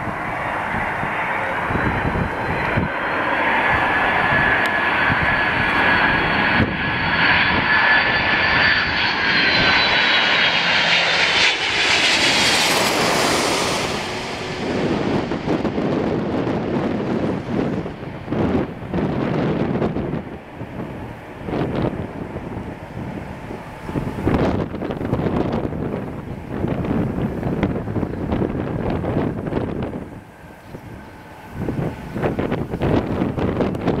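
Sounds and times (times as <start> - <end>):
jet engines passing by: 0.0 - 34.0.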